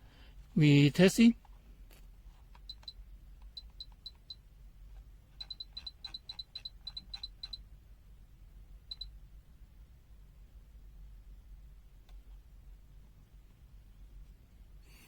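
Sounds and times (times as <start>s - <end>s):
short electronic key beeps: 5.4s - 7.6s.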